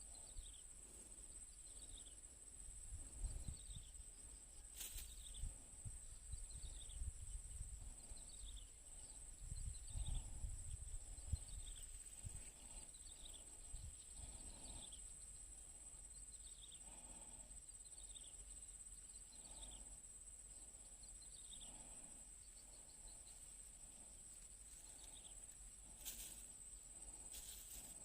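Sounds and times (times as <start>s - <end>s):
wind rumble on microphone: 2.8s - 4.0s, 5.2s - 12.8s.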